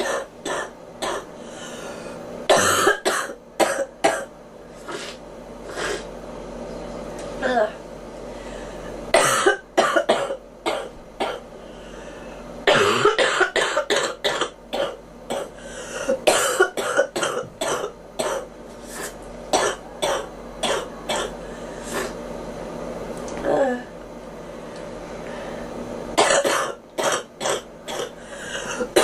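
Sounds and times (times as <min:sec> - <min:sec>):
girl coughing: 0:00.0 - 0:01.3, 0:02.5 - 0:04.3, 0:09.2 - 0:11.4, 0:12.7 - 0:18.5, 0:19.5 - 0:21.4, 0:26.2 - 0:29.0.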